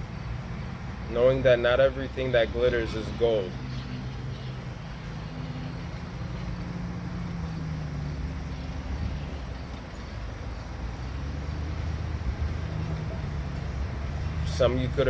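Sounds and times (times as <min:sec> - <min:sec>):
steady low rumble: 0:00.0 - 0:15.0.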